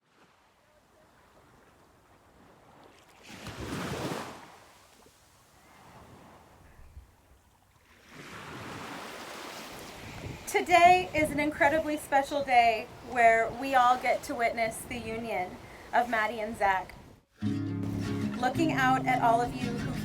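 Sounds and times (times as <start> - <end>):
ocean surf waves: 3.2 - 6.7, 7.8 - 17.2, 17.8 - 20.0.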